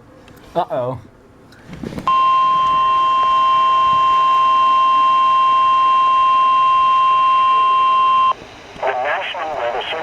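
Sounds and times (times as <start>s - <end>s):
steady loud warning beep: 2.1s - 8.4s.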